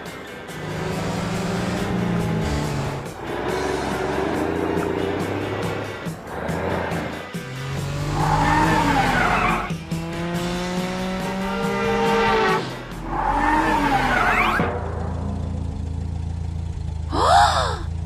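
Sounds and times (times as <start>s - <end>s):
tyres screeching: 0.0s - 9.8s, 12.2s - 14.7s
background music: 0.0s - 15.5s
engine revving: 0.0s - 17.1s.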